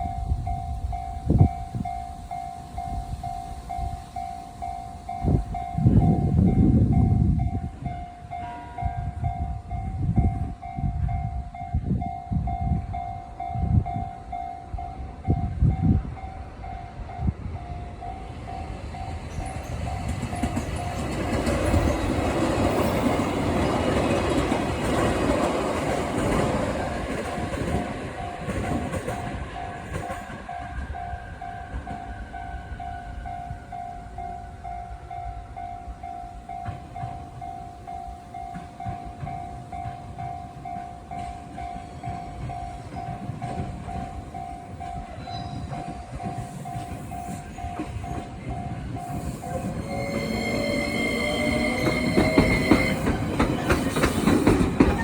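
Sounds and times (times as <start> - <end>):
level-crossing warning bell: 0.0 - 55.0
passing train rush: 0.0 - 55.0
train wheel clunks: 18.9 - 30.9, 36.5 - 55.0.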